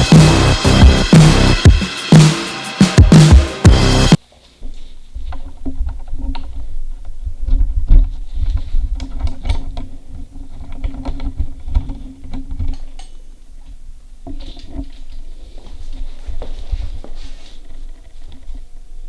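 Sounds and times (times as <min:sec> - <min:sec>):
tools clicking and tapping on parts: 0:09.0 - 0:13.3.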